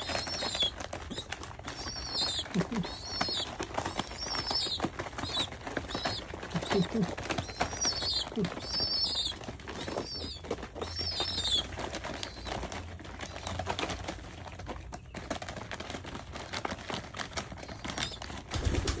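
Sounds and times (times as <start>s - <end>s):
wing flutters: 0.0s - 13.7s, 17.8s - 19.0s
pigeon beak clicking: 0.0s - 14.2s.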